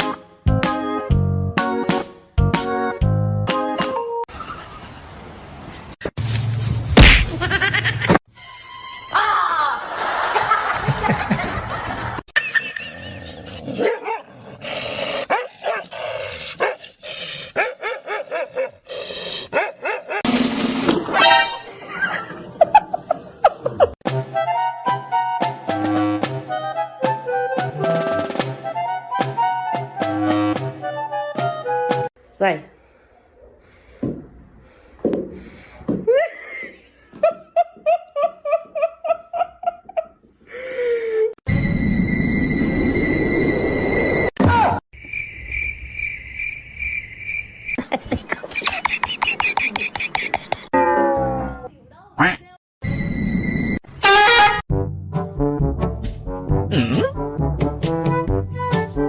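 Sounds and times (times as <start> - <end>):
person laughing: 7.2 - 8.2, 9.2 - 13.8, 21.7 - 24.0, 36.1 - 41.4, 47.8 - 50.7, 56.7 - 57.1.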